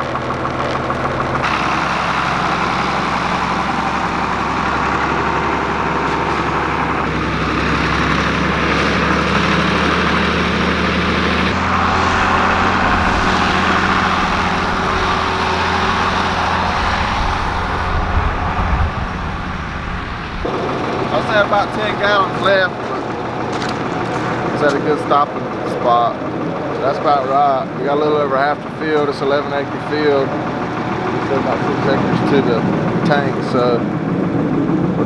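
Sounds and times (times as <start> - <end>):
tractor engine running: 0.0 - 35.0
sprayer hiss: 1.4 - 24.9.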